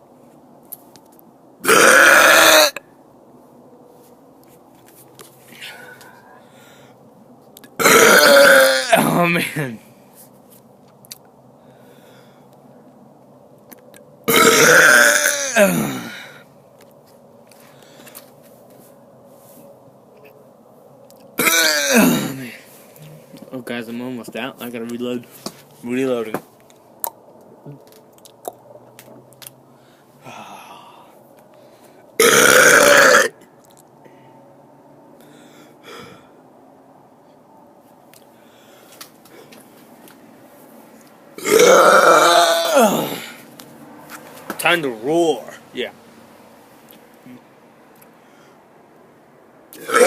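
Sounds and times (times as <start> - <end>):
man burping loudly: 1.6 - 2.8, 7.8 - 9.4, 14.3 - 16.4, 21.4 - 22.6, 32.2 - 33.4, 41.4 - 43.4, 49.8 - 50.0.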